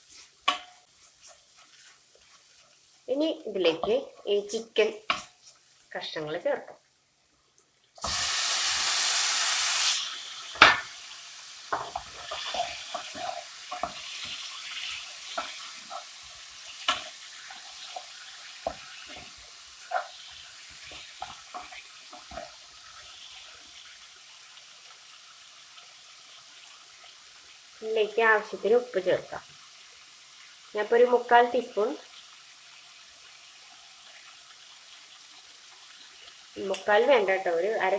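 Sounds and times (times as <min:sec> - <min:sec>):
chicken sizzling in hot oil: 0:00.0 - 0:37.9
spoon knocking and scraping pan: 0:00.1 - 0:03.0, 0:03.6 - 0:05.7, 0:10.4 - 0:27.2.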